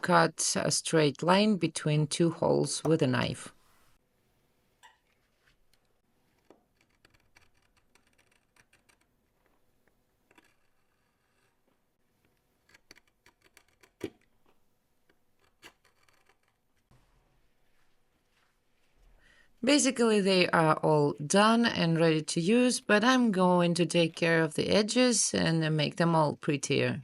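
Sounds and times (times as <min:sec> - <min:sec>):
knife cutting leather: 0:05.1 - 0:16.9.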